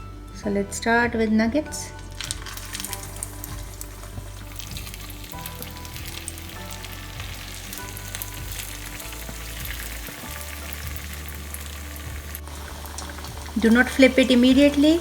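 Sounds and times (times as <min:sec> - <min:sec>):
food frying in hot oil: 0:02.2 - 0:15.0.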